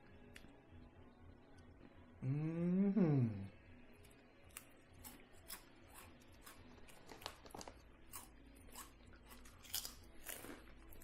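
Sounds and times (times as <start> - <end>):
chewing and crunching: 4.0 - 11.0.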